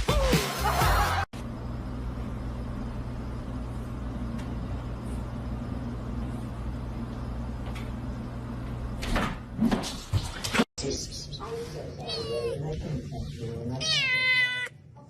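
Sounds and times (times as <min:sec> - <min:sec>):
low mechanical hum: 0:01.4 - 0:15.0.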